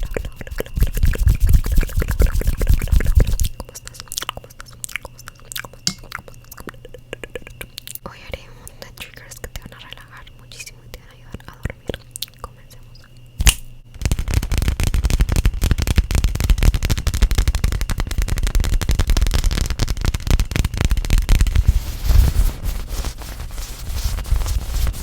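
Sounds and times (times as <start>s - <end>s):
sharp click: 13.4s - 13.7s
rapid tapping and crackling: 13.9s - 25.0s.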